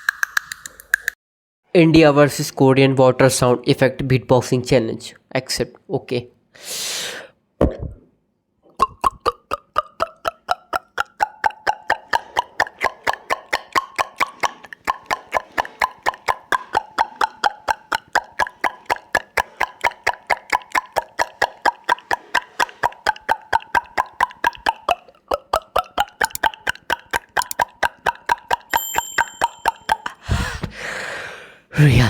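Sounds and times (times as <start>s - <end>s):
beatboxed water-drop mouth pops: 0.0s - 1.2s, 8.7s - 30.3s.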